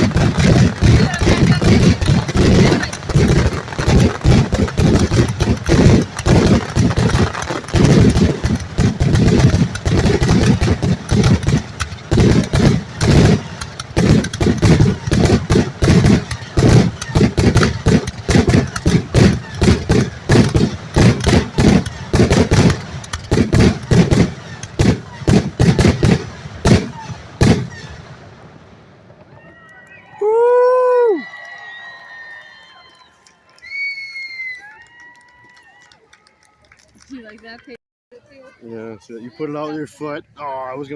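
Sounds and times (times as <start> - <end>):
fireworks booming and cracking: 0.0 - 29.5
fireworks rumble: 0.0 - 34.8.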